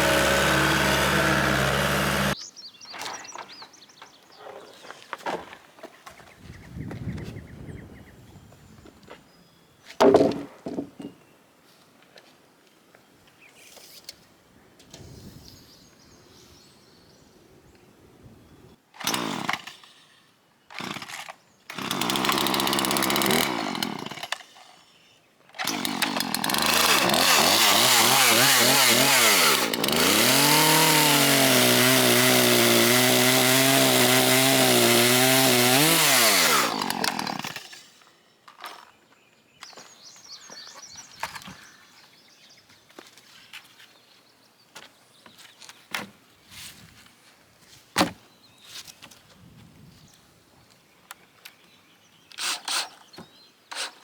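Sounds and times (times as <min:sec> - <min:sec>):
chainsaw cutting wood: 0:00.0 - 0:02.4, 0:19.0 - 0:20.0, 0:20.7 - 0:24.6, 0:25.6 - 0:38.0, 0:52.3 - 0:53.1, 0:53.7 - 0:54.0.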